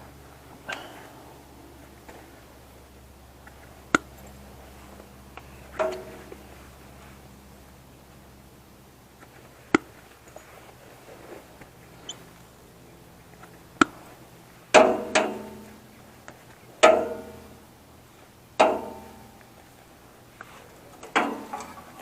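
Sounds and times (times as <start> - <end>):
metallic clanks: 3.5 - 6.6, 16.8 - 17.6, 18.6 - 19.6, 20.8 - 22.0.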